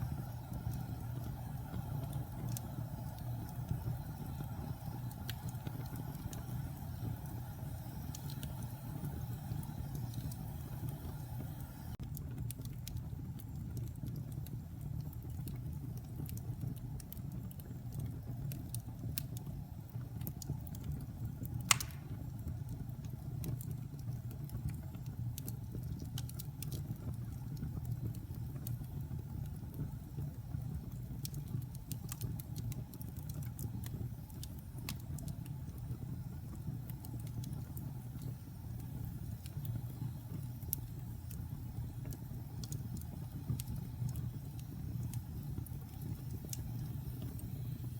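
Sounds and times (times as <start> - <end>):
wood fire crackling: 0.0 - 47.9
loud pop from fire: 21.7 - 22.3.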